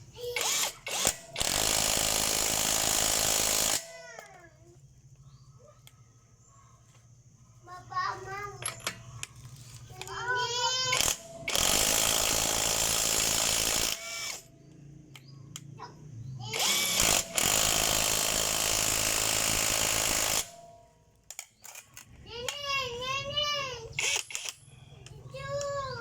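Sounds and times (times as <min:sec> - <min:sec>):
impact wrench hammering: 0:16.5 - 0:20.7.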